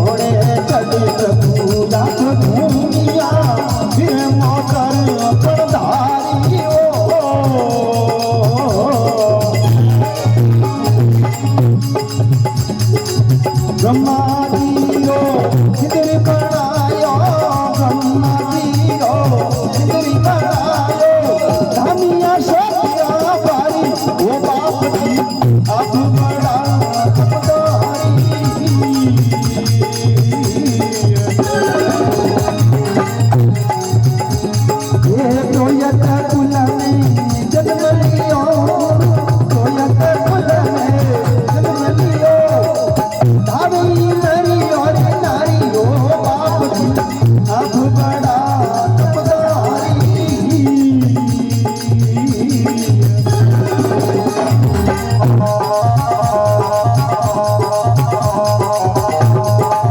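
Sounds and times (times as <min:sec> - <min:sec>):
steady percussion: 0:00.0 - 0:59.9.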